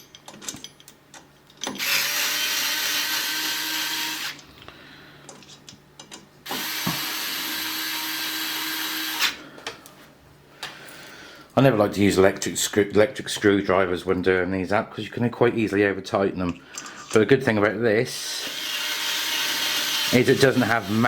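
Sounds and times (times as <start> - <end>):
cordless electric screwdriver running: 1.8 - 4.4, 6.5 - 9.4, 18.4 - 21.0.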